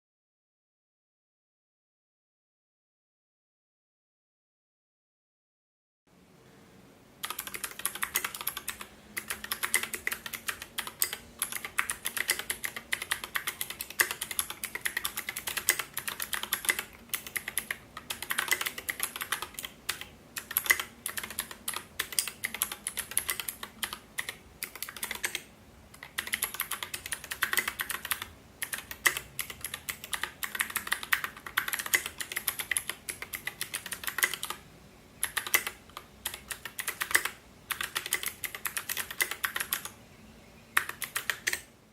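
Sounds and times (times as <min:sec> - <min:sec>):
mechanical keyboard typing: 0:07.2 - 0:34.6, 0:35.2 - 0:40.0, 0:40.8 - 0:41.7.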